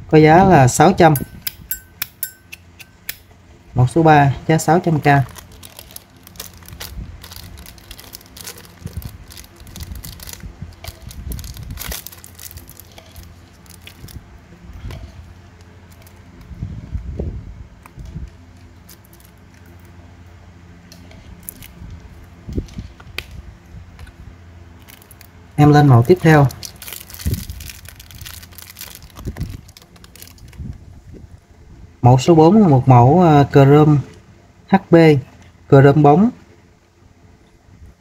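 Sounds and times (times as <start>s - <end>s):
packaging rustling: 5.1s - 14.2s, 24.8s - 25.4s, 26.0s - 30.6s.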